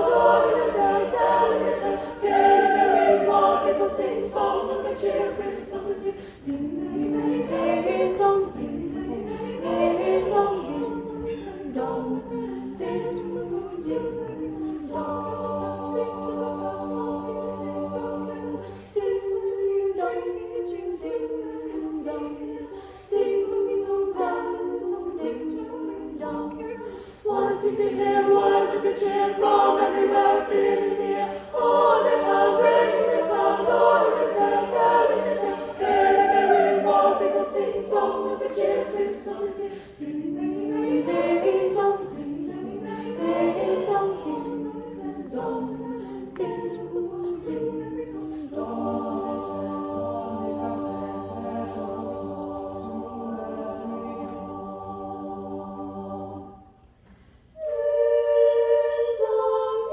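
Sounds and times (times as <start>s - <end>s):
choir singing a cappella: 0.0s - 59.9s.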